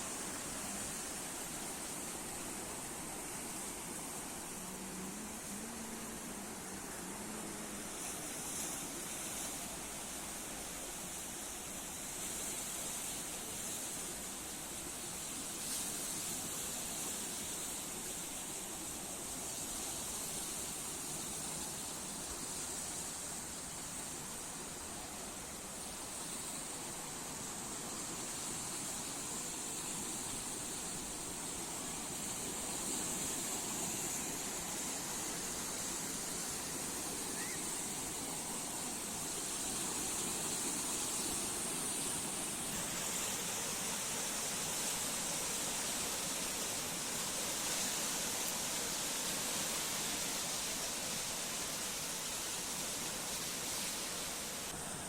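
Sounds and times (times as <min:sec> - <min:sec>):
sea waves washing on shore: 0:00.0 - 0:55.0.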